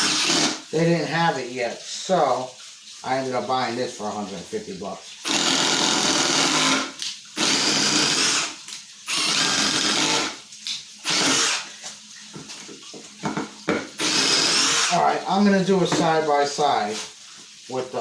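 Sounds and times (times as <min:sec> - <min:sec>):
impact driver whining: 0:09.1 - 0:10.4, 0:11.0 - 0:11.7, 0:14.0 - 0:14.9.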